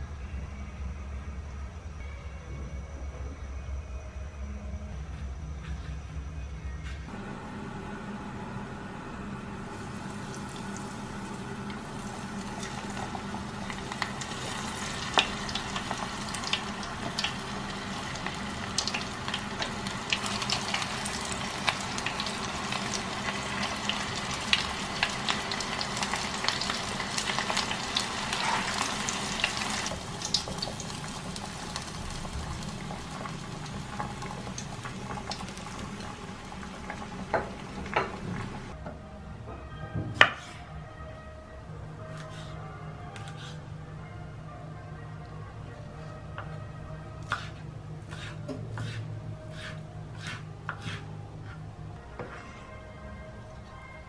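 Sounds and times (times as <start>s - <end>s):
food sizzling in hot oil: 9.6s - 37.8s
oil popping and crackling: 18.7s - 38.0s.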